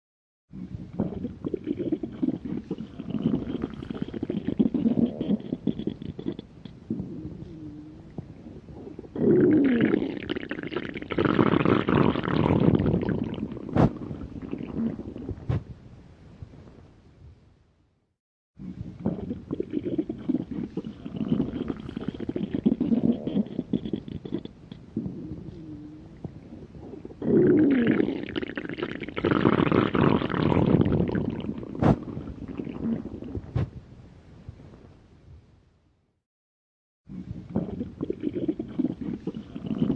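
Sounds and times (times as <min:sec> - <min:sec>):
stomach growling: 0:00.5 - 0:15.7, 0:18.6 - 0:33.8, 0:37.1 - 0:39.9
short sharp pops: 0:13.8 - 0:14.0, 0:31.8 - 0:32.0.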